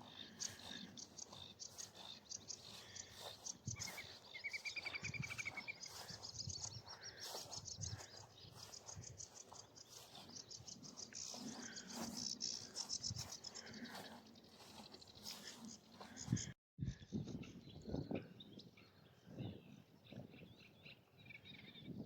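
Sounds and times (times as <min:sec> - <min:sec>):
songbird trill: 0:00.0 - 0:22.0
high-pitched bird chattering: 0:00.3 - 0:16.5.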